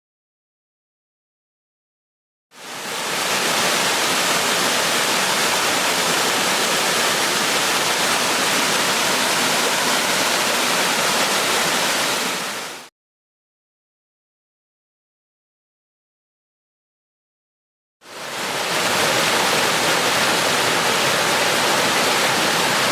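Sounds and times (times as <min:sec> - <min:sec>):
waterfall rushing: 0:02.6 - 0:12.9, 0:18.0 - 0:22.9.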